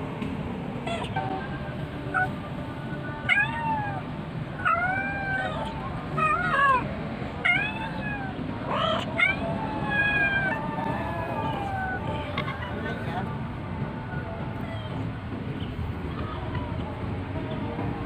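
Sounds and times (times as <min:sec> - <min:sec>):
cat meowing: 0:03.3 - 0:04.0, 0:04.6 - 0:06.8, 0:07.4 - 0:12.4.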